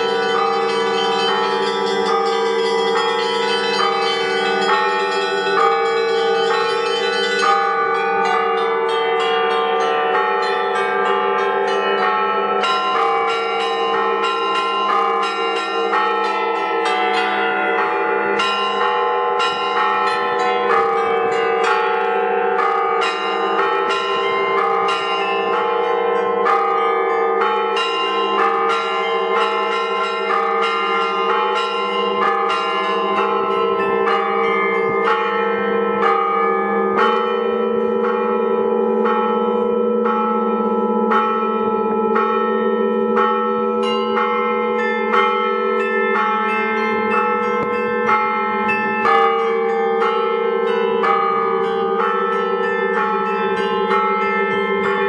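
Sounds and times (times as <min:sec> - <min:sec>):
hum of large bells: 0:00.0 - 0:55.0.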